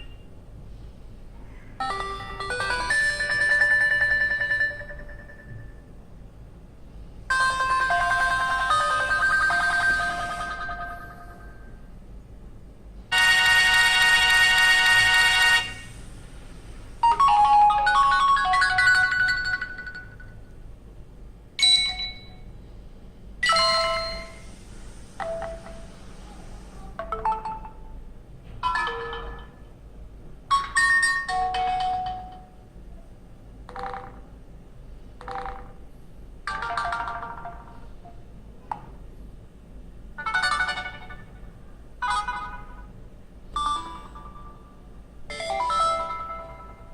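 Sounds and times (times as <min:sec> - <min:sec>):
phone ringtones and alert tones: 0:01.8 - 0:05.8, 0:07.3 - 0:11.7, 0:13.1 - 0:16.0, 0:17.0 - 0:20.4, 0:23.4 - 0:24.5, 0:27.0 - 0:27.9, 0:28.6 - 0:29.7, 0:33.7 - 0:34.3, 0:35.2 - 0:35.8, 0:36.5 - 0:37.9, 0:40.2 - 0:42.9, 0:43.5 - 0:44.6, 0:45.3 - 0:46.9.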